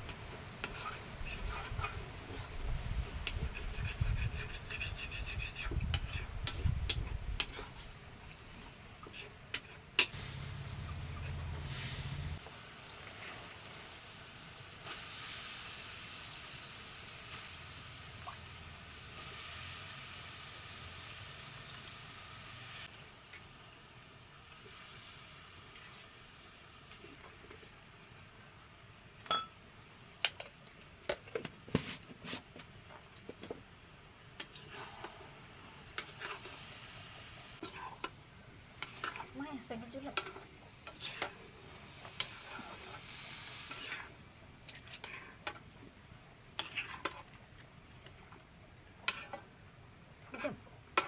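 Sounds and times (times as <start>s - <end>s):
utensil scraping a pan: 0.6s - 8.0s, 38.8s - 41.4s, 42.0s - 45.5s, 46.6s - 47.2s
food sizzling in a frying pan: 10.0s - 30.6s, 32.8s - 38.0s, 38.6s - 44.2s.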